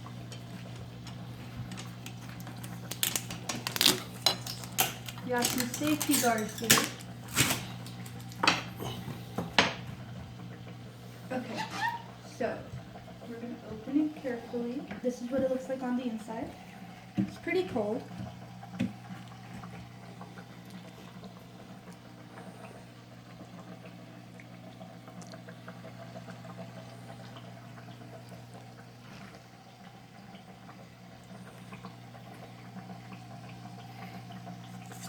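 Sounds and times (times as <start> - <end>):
low electrical hum: 0.0 - 35.0.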